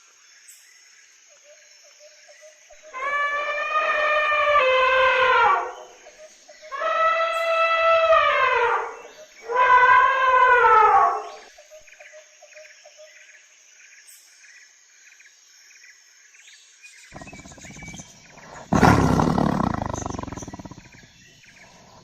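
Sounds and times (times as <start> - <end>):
loud roar: 17.2 - 20.9
drawn-out animal call: 17.2 - 21.0.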